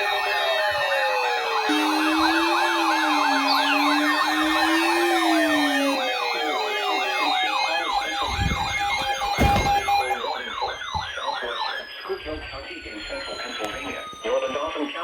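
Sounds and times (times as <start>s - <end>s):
yelping electronic siren: 0.0s - 11.7s
sirens winding down: 0.0s - 15.0s
steady tone siren: 0.0s - 15.0s.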